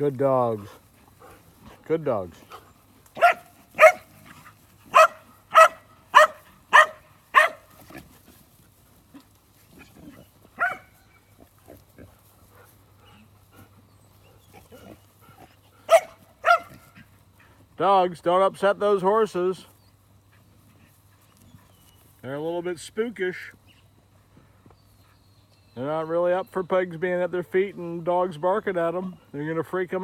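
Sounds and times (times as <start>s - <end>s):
dog barking sharply: 3.2s - 4.1s, 4.9s - 7.7s, 10.6s - 10.9s, 15.9s - 16.8s.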